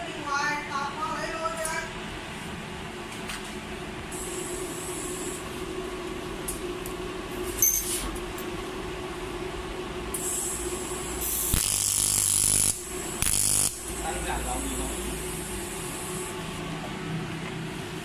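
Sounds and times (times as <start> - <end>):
welder humming: 4.1 - 7.0, 10.1 - 16.7
welding arc buzzing hiss: 4.1 - 8.4, 10.1 - 16.8.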